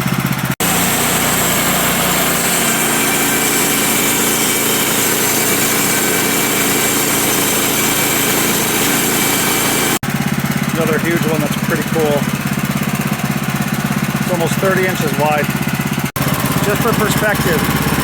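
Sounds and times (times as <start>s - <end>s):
sawmill engine under load: 0.0s - 18.0s
saw blade hissing through wood: 0.6s - 10.0s.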